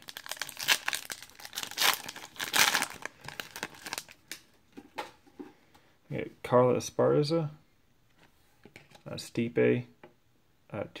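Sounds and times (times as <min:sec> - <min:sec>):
foil wrapper crinkling: 0:00.0 - 0:04.4.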